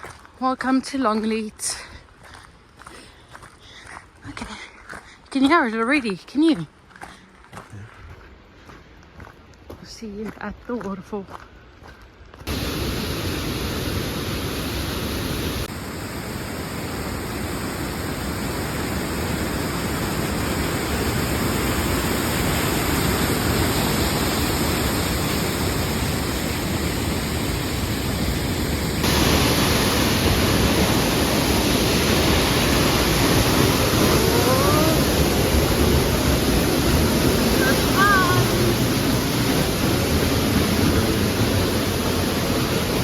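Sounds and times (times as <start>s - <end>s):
waterfall rushing: 12.5s - 43.0s.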